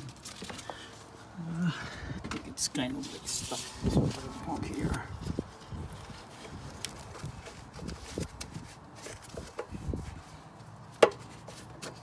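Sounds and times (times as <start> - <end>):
knocks and rubbing of engine parts: 3.2 - 12.0.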